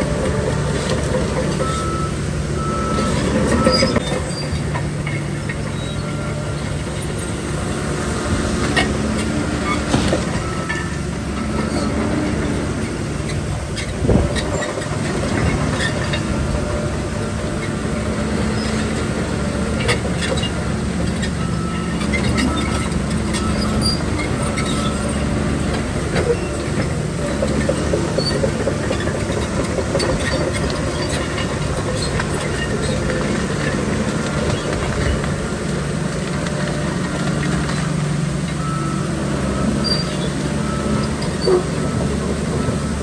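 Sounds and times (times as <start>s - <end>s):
bulldozer diesel engine: 0.0s - 43.0s
steel tracks clanking and squeaking: 0.0s - 43.0s.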